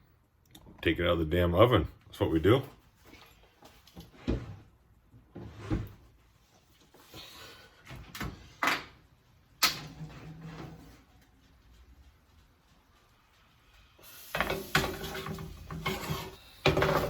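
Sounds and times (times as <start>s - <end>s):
metal pan scraping: 14.3s - 17.0s.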